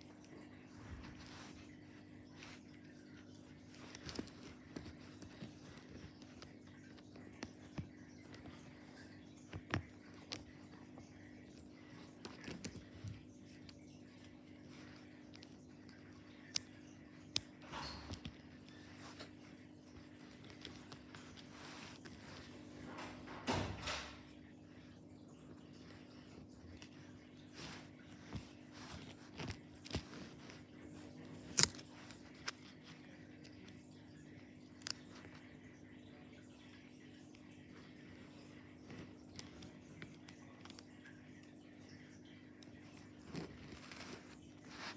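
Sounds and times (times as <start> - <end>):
faint steady hum: 0.0 - 44.9
plastic toy parts clicking: 31.5 - 31.9.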